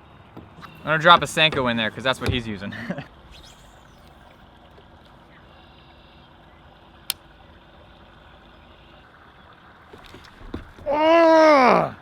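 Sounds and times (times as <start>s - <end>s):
water rushing from small waterfall: 10.2s - 12.0s.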